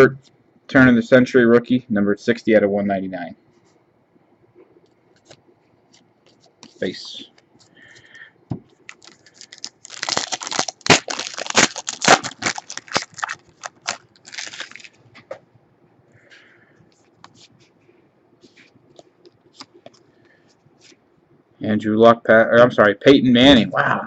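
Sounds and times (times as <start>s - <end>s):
cards being handled: 5.2s - 8.1s
plastic wrapper crinkling: 8.7s - 15.0s.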